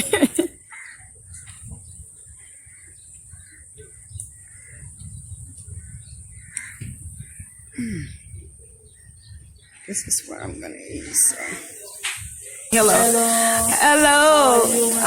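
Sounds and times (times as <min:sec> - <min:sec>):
crows cawing: 0:00.7 - 0:01.1, 0:06.4 - 0:06.9.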